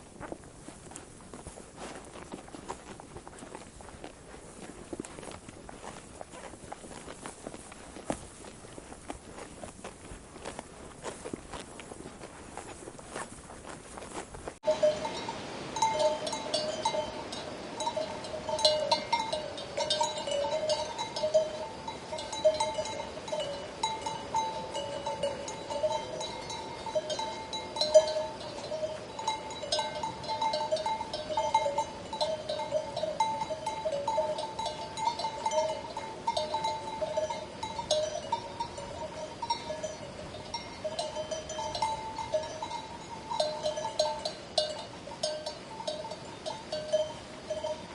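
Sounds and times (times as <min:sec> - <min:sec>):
sheep bells clanking: 0:14.6 - 0:47.9.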